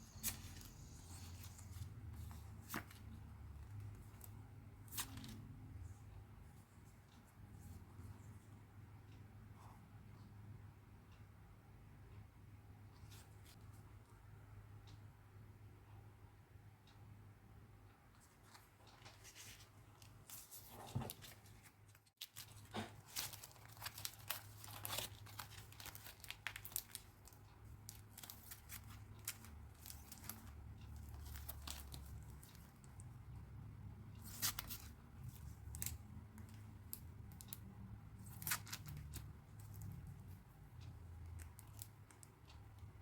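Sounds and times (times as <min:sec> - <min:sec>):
packaging tearing and crinkling: 0:22.2 - 0:27.0.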